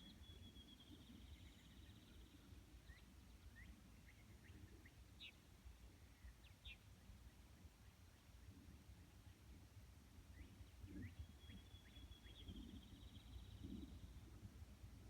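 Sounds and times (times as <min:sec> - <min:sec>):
birdsong trills and chirps: 0:10.4 - 0:14.3.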